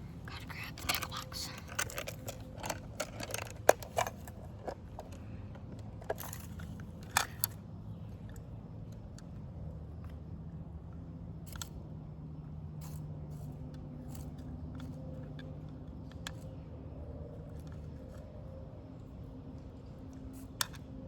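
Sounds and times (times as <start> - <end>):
steady low hum: 0.0 - 21.0
lures rattling in plastic box: 0.8 - 5.2.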